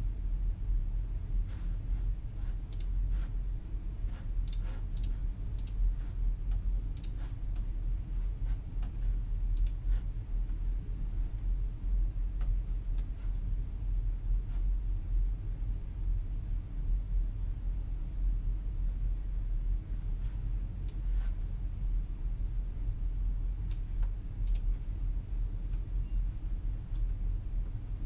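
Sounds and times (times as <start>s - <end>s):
low room hum: 0.0s - 28.0s
keyboard and mouse clicks: 2.7s - 3.3s, 4.4s - 5.8s, 6.5s - 7.7s, 8.8s - 9.9s, 23.6s - 24.8s.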